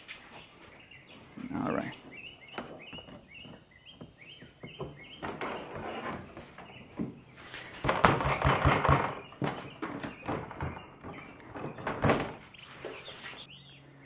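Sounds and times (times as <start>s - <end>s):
bird chirping: 0.0s - 14.0s
plastic hood clattering on brackets: 2.6s - 13.0s.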